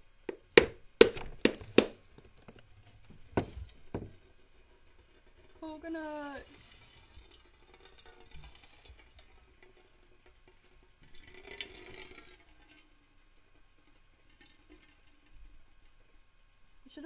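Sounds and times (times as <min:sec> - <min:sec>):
water running: 0:03.0 - 0:15.3.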